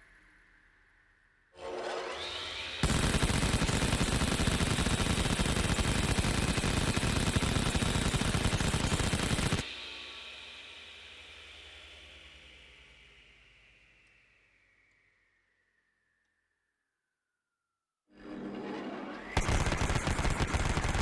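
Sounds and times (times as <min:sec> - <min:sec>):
rotary cannon whine: 0:02.7 - 0:09.6, 0:18.2 - 0:21.0
rotary cannon firing rapid burst: 0:02.8 - 0:09.7, 0:19.4 - 0:21.0.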